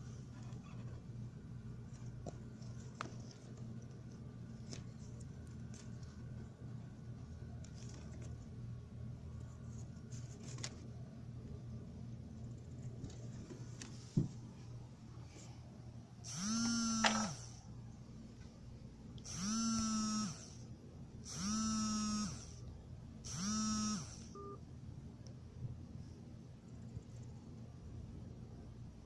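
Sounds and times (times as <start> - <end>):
small electric motor humming: 16.3 - 17.6, 19.2 - 20.7, 21.3 - 22.6, 23.3 - 24.4.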